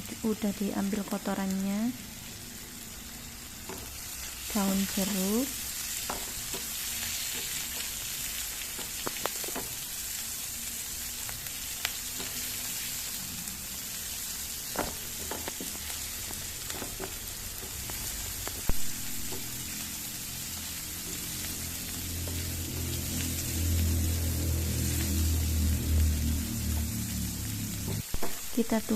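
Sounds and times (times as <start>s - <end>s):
shrimp sizzling in hot oil: 0.0s - 28.9s
spatula knocking in pan: 6.0s - 6.7s
low hum: 17.7s - 28.0s.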